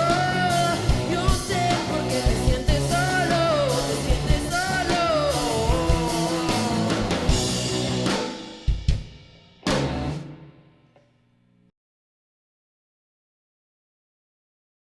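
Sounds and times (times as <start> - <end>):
rock band playing: 0.0 - 10.8.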